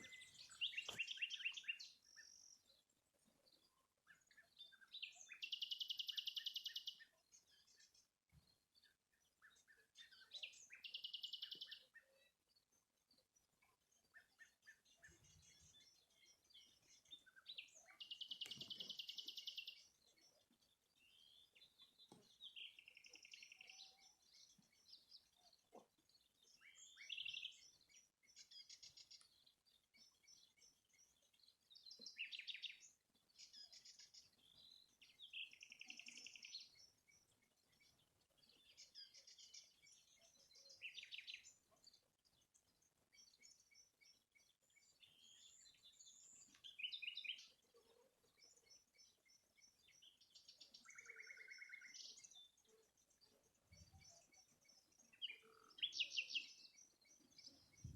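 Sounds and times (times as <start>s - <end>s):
songbird trilling faintly: 0.0s - 2.8s, 14.0s - 57.9s.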